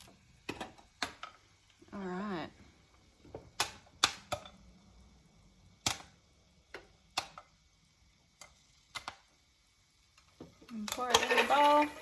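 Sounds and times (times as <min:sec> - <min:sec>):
popcorn popping in a pot: 0:00.0 - 0:12.0.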